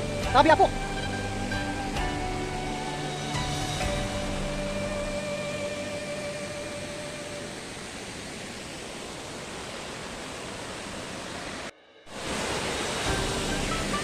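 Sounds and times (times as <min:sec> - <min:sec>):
background music: 0:00.0 - 0:07.6, 0:12.1 - 0:14.0
waterfall rushing: 0:00.0 - 0:14.0.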